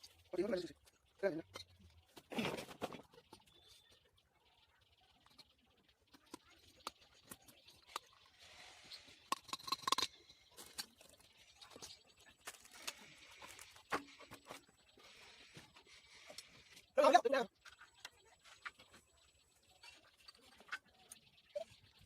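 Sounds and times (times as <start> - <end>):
small hard objects clicking: 9.2 - 11.2.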